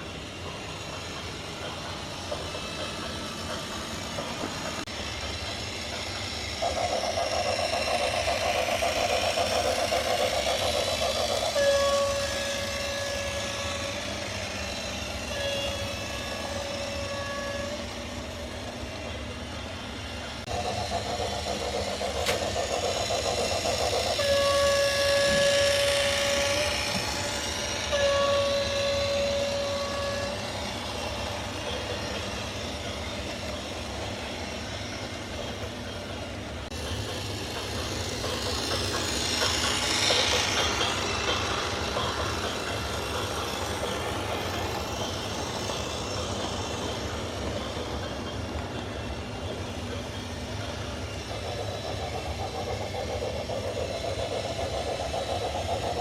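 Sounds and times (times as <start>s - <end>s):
horn blasts: 11.5s - 17.9s, 24.1s - 31.5s.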